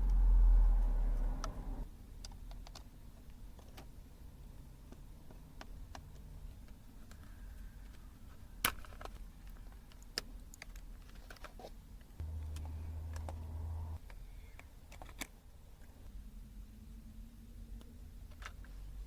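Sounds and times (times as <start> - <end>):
low steady hum: 0.0 - 1.8, 12.2 - 14.0.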